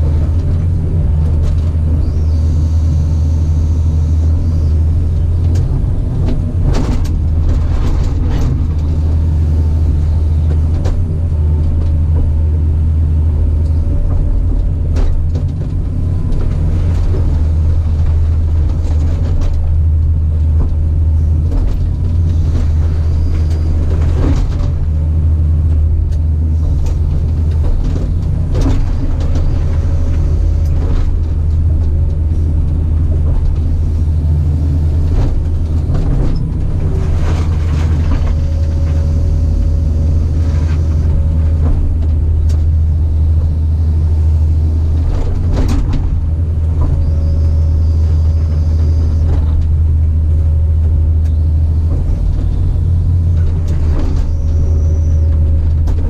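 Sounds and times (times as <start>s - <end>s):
loader diesel engine drone: 0.0s - 56.0s
machine clanks and knocks: 5.4s - 9.3s, 13.9s - 25.0s, 25.6s - 34.0s, 34.7s - 44.2s, 44.8s - 48.2s, 51.8s - 56.0s.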